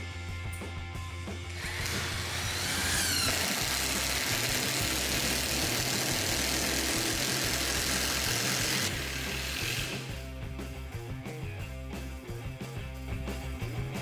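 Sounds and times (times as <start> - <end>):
music with bass line: 0.0 - 14.0
power tool motor whining: 1.6 - 10.2.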